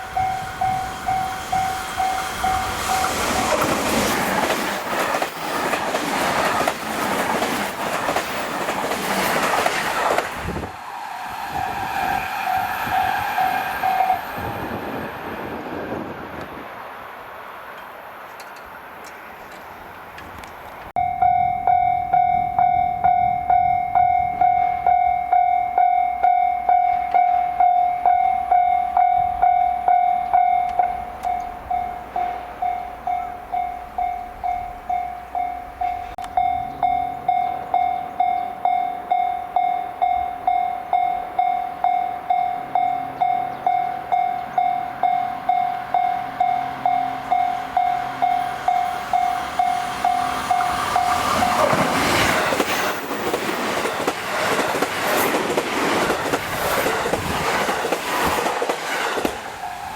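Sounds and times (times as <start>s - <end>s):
level crossing warning bell: 0.0s - 3.6s, 21.0s - 51.7s
train rushing past: 0.0s - 19.1s, 20.7s - 59.9s.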